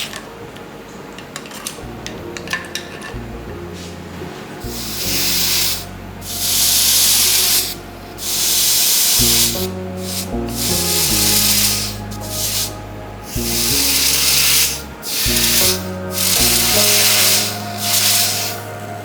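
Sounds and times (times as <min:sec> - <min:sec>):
background music with low notes: 0:00.0 - 0:19.0
hot metal hissing on ice: 0:04.7 - 0:12.7, 0:13.3 - 0:18.7.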